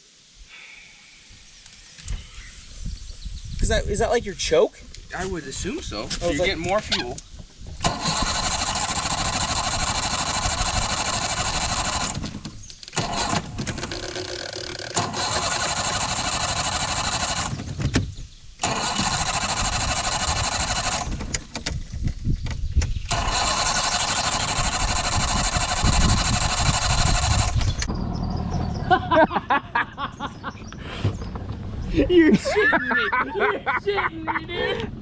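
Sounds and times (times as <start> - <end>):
outboard boat motor running: 7.9 - 17.7.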